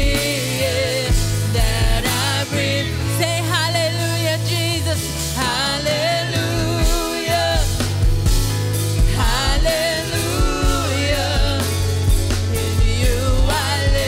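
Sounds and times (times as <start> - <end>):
band with bass and drums: 0.0 - 14.0
person singing with vibrato: 0.0 - 14.0.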